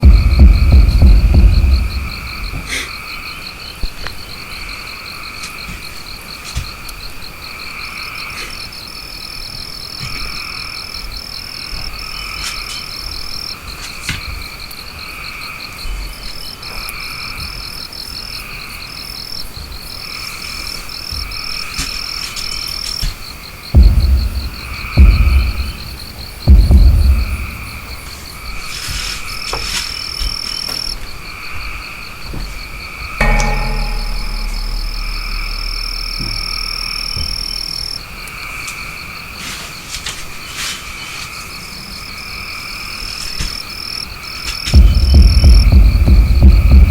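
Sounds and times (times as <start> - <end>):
loud low booms: 0.0 - 2.8, 23.8 - 28.4, 33.2 - 38.2, 44.8 - 46.9
frogs croaking: 0.0 - 46.9.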